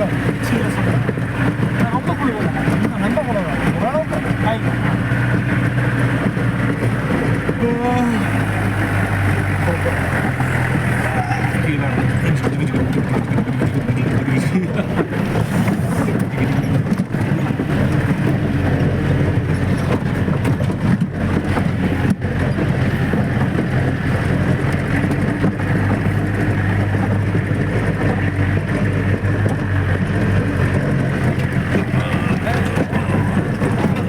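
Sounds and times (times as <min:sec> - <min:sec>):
jeep engine running while driving: 0:00.0 - 0:34.0
road and wind noise: 0:00.0 - 0:34.0.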